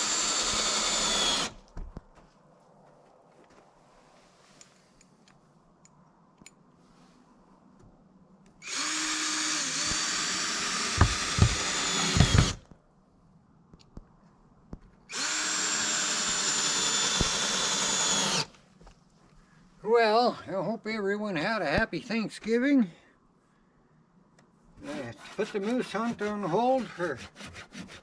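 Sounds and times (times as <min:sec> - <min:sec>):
power drill running: 0:00.0 - 0:01.6, 0:08.6 - 0:12.6, 0:15.1 - 0:18.5
knocks: 0:11.0 - 0:12.6.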